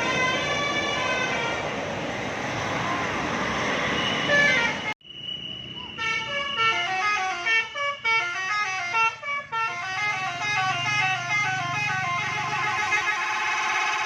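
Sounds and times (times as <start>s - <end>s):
multi-tone bus horn tune: 0.0s - 1.7s, 3.8s - 5.0s, 5.9s - 14.0s
bus engine hum: 0.0s - 14.0s.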